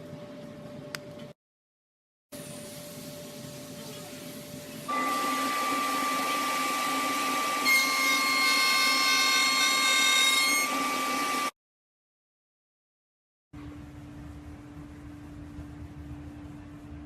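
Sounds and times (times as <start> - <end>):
power tool high whine: 4.9 - 11.5.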